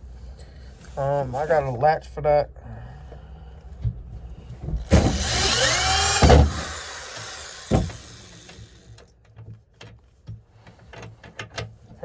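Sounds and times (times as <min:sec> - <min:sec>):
hard knocks: 0:04.8 - 0:08.6.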